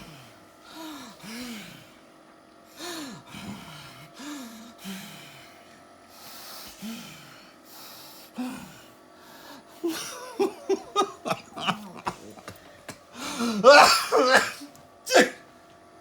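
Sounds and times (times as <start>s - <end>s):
child breathing with stridor: 0.0s - 2.1s, 2.7s - 9.9s, 13.1s - 14.3s
gasping for air: 10.7s - 15.4s.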